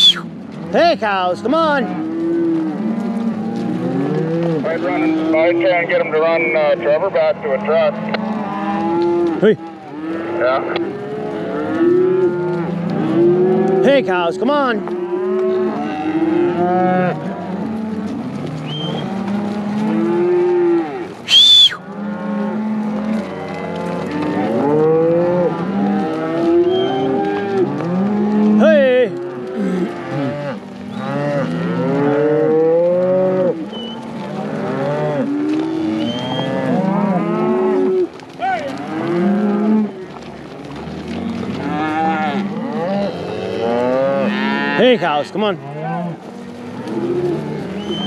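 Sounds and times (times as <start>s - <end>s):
loud high whistle: 0.0s - 0.2s, 21.3s - 21.8s
cattle mooing: 0.0s - 48.0s.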